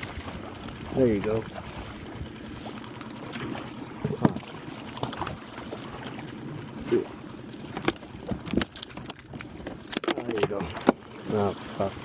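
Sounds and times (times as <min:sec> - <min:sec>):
boat motor running: 0:00.0 - 0:12.0
knocks and clatter on board: 0:04.0 - 0:05.4, 0:07.7 - 0:11.0.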